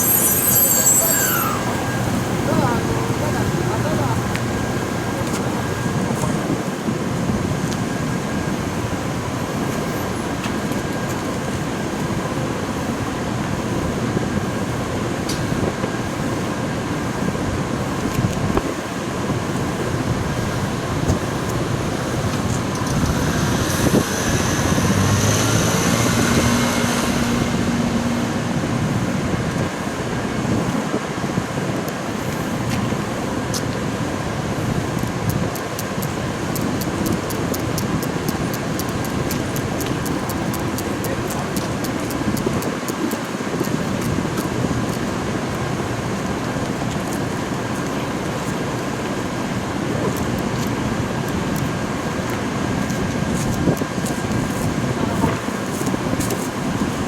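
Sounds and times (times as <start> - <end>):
road traffic noise: 0.0 - 57.0
vehicle passing close: 23.1 - 29.4.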